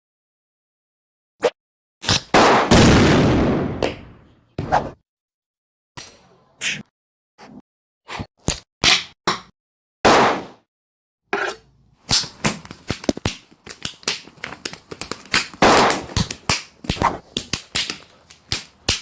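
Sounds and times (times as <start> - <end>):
cartoon hits and slaps: 1.4 - 5.0, 10.1 - 10.7, 15.4 - 19.0.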